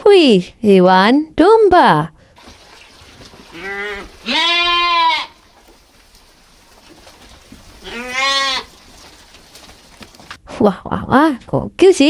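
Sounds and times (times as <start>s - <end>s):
sheep bleating: 3.5s - 5.5s, 7.5s - 9.1s.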